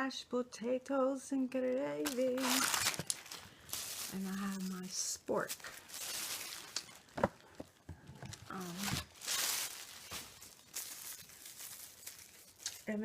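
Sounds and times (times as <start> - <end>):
food packaging rustling: 2.0 - 13.0.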